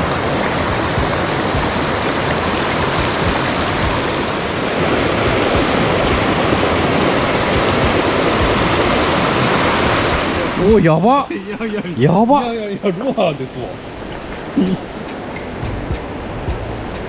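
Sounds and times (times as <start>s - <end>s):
stream running over rocks: 0.0s - 11.3s.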